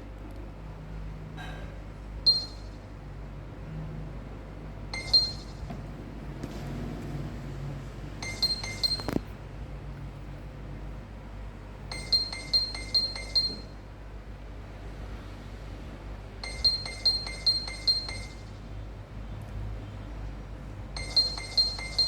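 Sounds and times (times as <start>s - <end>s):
phone ringtone beeps: 2.3s - 2.8s, 4.9s - 5.9s, 8.2s - 9.2s, 11.9s - 13.8s, 16.4s - 18.6s, 21.0s - 22.0s.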